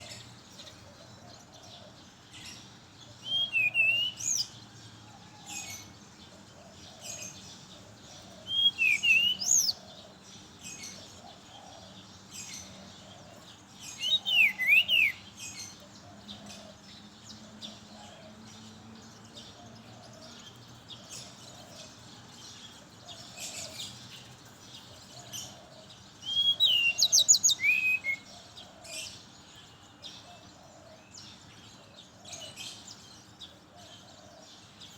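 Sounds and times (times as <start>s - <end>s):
bird whistling song: 3.2s - 4.6s, 8.4s - 9.8s, 13.9s - 15.5s, 26.2s - 28.3s.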